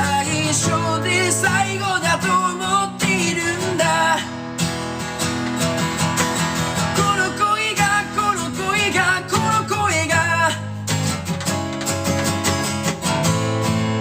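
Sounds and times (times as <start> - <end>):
man singing: 0.0 - 4.4, 6.7 - 11.0
acoustic guitar strumming: 0.0 - 14.0.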